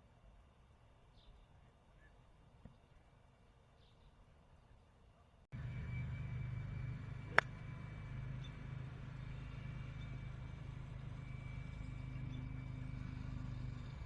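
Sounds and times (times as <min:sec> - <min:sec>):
steady low hum: 0:05.5 - 0:14.0
golf club striking ball: 0:07.2 - 0:07.9.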